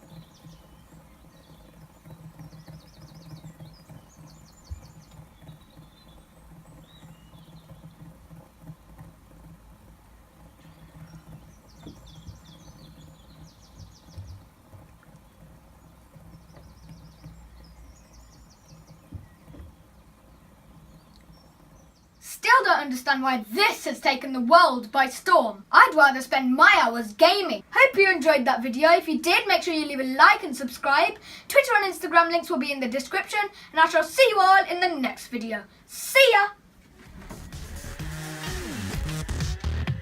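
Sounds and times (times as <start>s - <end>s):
bird trilling: 0.0s - 8.9s, 10.4s - 22.2s.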